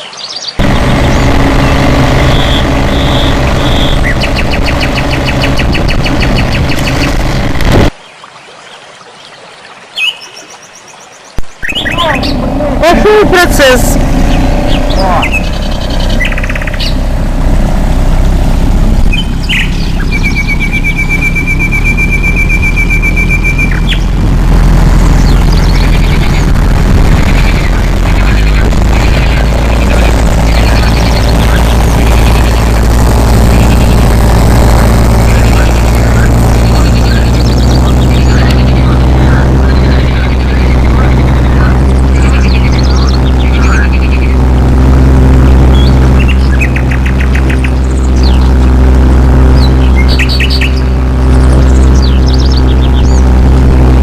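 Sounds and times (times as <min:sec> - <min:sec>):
bird trilling: 0:00.2 - 0:07.4, 0:11.5 - 0:17.2, 0:19.0 - 0:24.2, 0:45.7 - 0:48.7, 0:49.5 - 0:53.3
loud engine running: 0:00.6 - 0:07.9, 0:11.6 - 0:54.0
loud low rumble: 0:00.6 - 0:07.9, 0:11.5 - 0:54.0.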